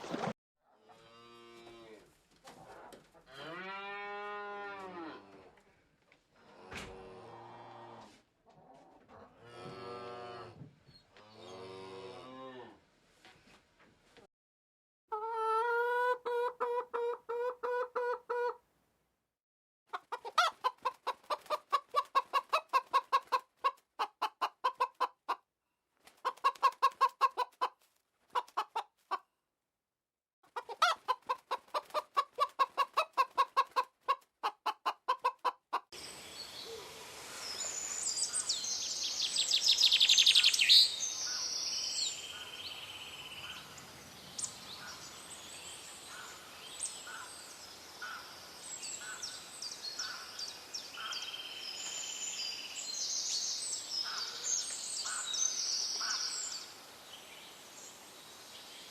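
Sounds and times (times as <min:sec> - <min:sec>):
chicken clucking: 0:15.1 - 0:18.6, 0:19.9 - 0:25.4, 0:26.1 - 0:29.2, 0:30.5 - 0:35.9
steady outdoor hiss: 0:36.0 - 0:58.9.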